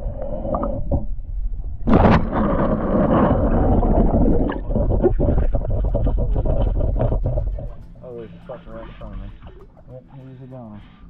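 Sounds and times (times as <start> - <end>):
low rumble: 0.0 - 11.0
water splashing around boat: 1.9 - 11.0.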